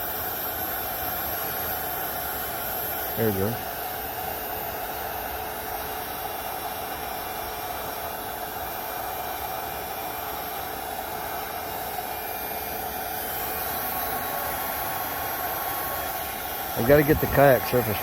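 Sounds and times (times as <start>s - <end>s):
heat gun blowing: 0.0s - 18.0s.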